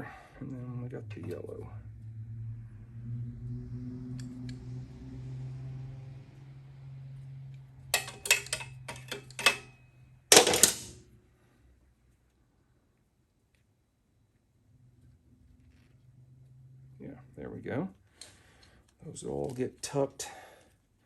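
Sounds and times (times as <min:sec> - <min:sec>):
metal clatter: 0:08.0 - 0:11.0.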